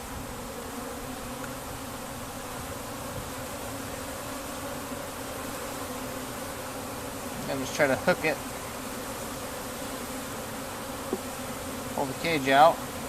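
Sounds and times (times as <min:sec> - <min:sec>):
honeybees buzzing: 0:00.0 - 0:13.0.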